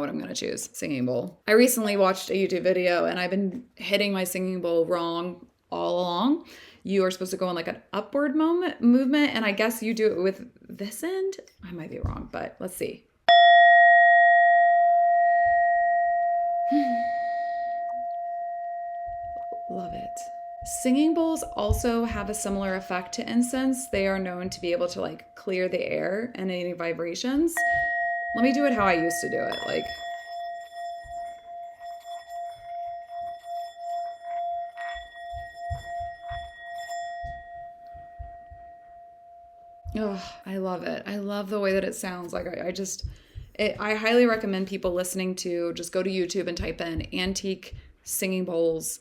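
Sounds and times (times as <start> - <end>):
singing bowl ringing: 13.3 - 25.8, 27.6 - 40.0
soft low thuds: 18.0 - 25.4, 27.3 - 40.4, 41.6 - 45.3, 46.3 - 48.3.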